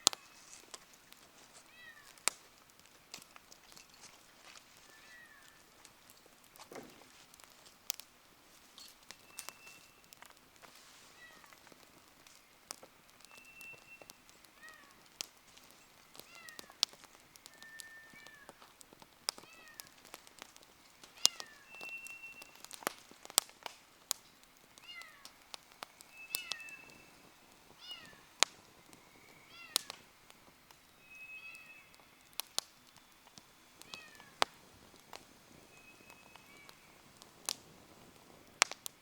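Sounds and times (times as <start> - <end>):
campfire crackling and popping: 0.0 - 39.0
thin whistles: 8.8 - 10.1, 13.2 - 14.3, 17.5 - 18.4, 21.3 - 22.7, 26.0 - 27.5, 30.9 - 33.3, 35.6 - 37.0.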